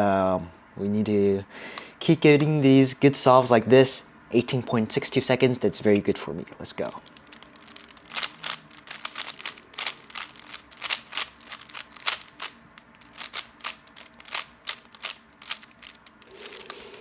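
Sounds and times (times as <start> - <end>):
puzzle cube plastic clicks: 6.8 - 17.0.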